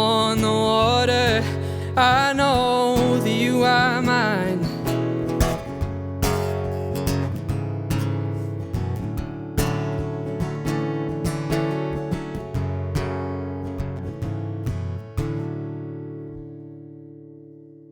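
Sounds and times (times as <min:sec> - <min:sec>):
acoustic guitar strumming: 0:00.0 - 0:17.9.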